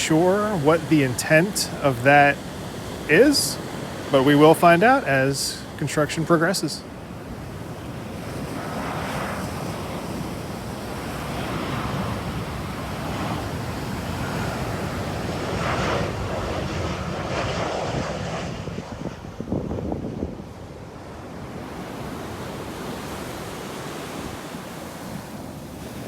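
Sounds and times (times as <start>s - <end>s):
ocean surf breaking: 0.0s - 26.0s
wind buffeting microphone: 7.0s - 26.0s.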